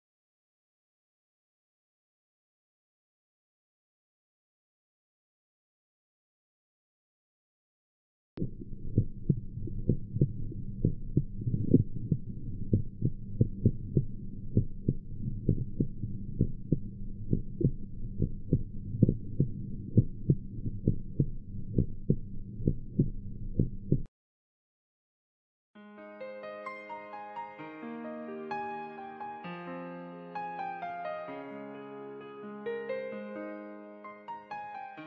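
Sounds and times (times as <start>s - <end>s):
heartbeat through a stethoscope: 8.4s - 24.1s
low steady hum: 8.4s - 24.1s.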